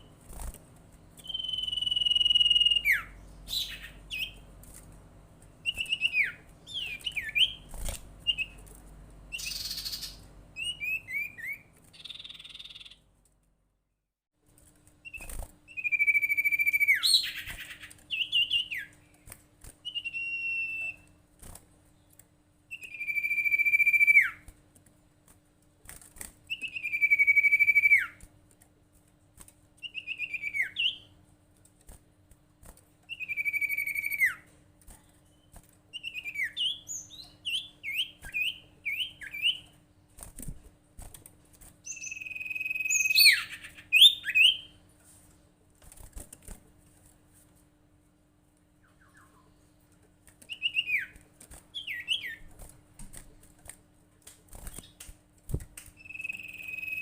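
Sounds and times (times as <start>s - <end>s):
bird whistling song: 1.2s - 4.4s, 5.6s - 8.6s, 9.3s - 13.0s, 15.0s - 18.9s, 19.8s - 21.2s, 22.7s - 24.4s, 26.5s - 28.2s, 29.8s - 31.1s, 33.1s - 34.5s, 35.3s - 39.7s, 41.8s - 44.8s, 48.8s - 49.5s, 50.5s - 52.5s, 56.0s - 57.0s.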